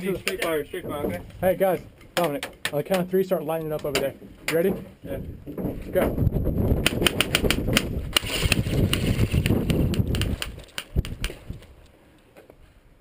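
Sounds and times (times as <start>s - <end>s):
airsoft guns firing: 6.8s - 9.1s.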